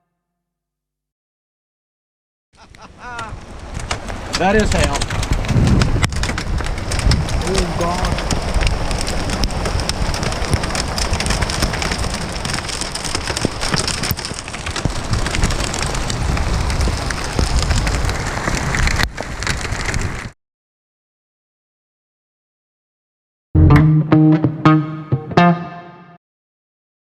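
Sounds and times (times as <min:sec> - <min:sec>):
hail and heavy rain pelting: 0:03.1 - 0:20.3.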